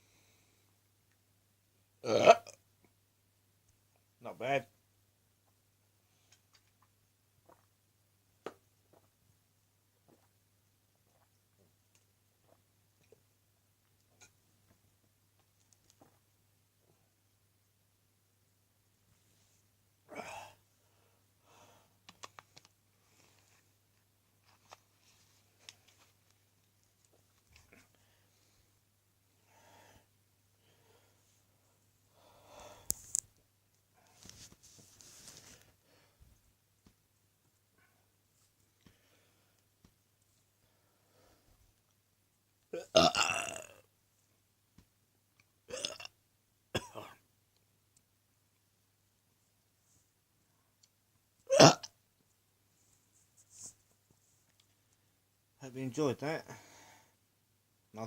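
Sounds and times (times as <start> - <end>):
person burping: 2.0 - 2.6, 42.7 - 43.9, 45.7 - 46.2, 46.8 - 47.2, 51.5 - 52.0
breath out: 32.2 - 33.0.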